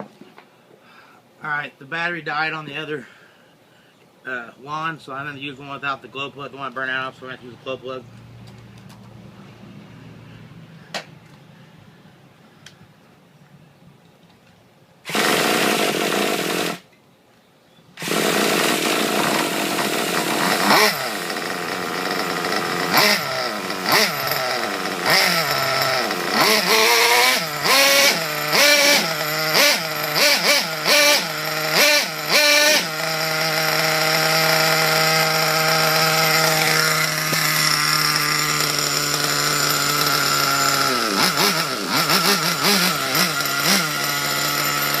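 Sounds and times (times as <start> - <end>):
small two-stroke engine revving: 15.0 - 16.8, 18.0 - 45.0.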